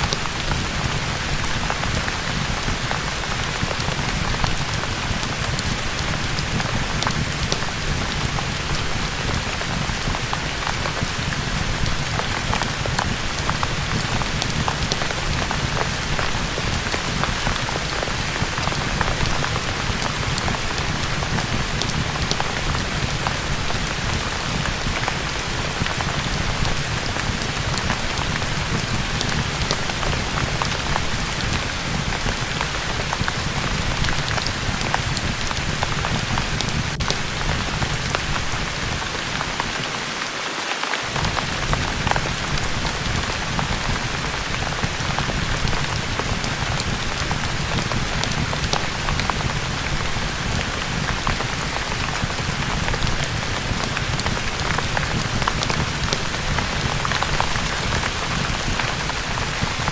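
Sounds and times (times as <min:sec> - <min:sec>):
heavy rain hissing: 0:00.0 - 0:59.9.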